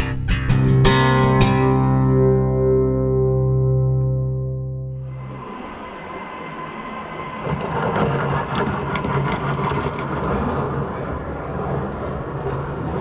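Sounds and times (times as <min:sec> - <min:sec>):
mechanical rumble and hum: 0:04.7 - 0:13.0.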